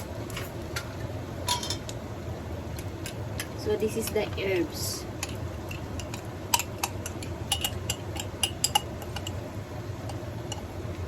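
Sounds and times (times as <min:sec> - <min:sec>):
utensil clinking against cookware: 0:01.5 - 0:01.9, 0:05.2 - 0:09.4.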